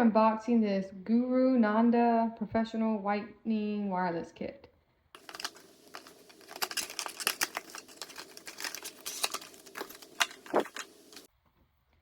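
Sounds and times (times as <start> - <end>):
packaging crinkling and rustling: 5.2 - 11.3.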